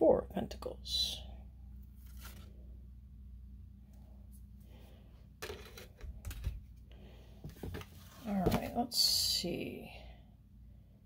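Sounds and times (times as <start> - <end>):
steady low hum: 0.0 - 11.0
cards and paper rustling: 2.0 - 2.5.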